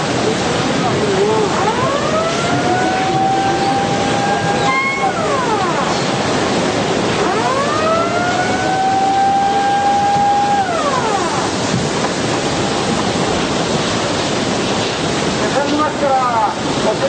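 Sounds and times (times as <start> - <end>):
steady rushing noise: 0.0 - 17.0
warning siren wailing: 1.2 - 11.7.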